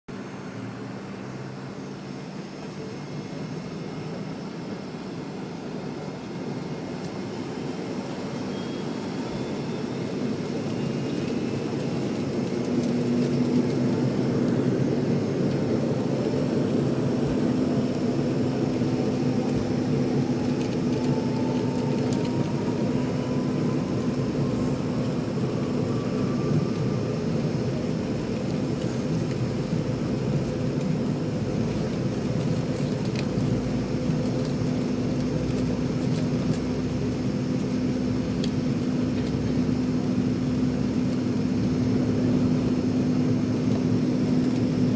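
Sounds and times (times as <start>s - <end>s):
rising engine whine: 0.1s - 44.9s
jet engines spooling up: 0.2s - 33.4s.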